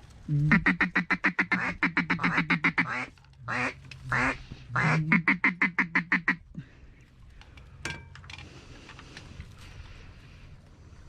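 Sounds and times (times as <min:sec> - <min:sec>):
duck call quacks: 0:00.4 - 0:06.4.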